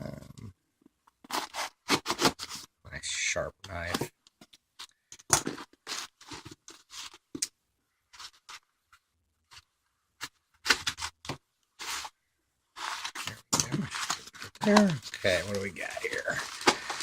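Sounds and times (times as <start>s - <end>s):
knife cutting a package: 1.2s - 2.6s, 12.8s - 17.0s.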